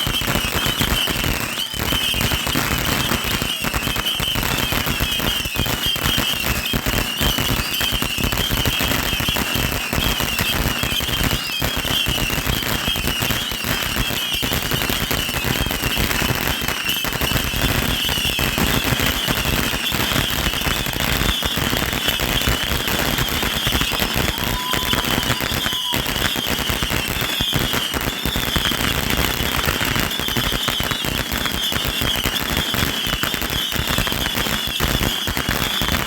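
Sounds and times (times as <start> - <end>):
fireworks crackling and popping: 0.0 - 36.0
wavering high whistle: 21.2 - 27.6.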